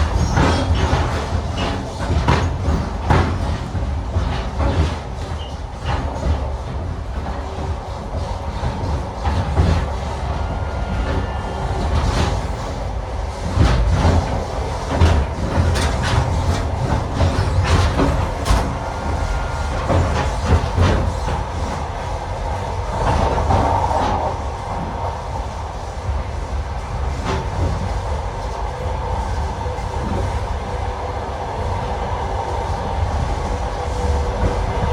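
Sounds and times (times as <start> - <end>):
train rumble: 0.0 - 34.9
wheels clacking over rail joints: 13.4 - 22.0.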